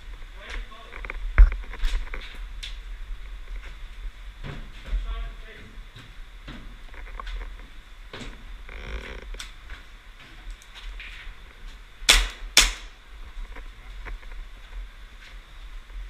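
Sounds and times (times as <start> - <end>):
airsoft gun shots: 12.1 - 12.9.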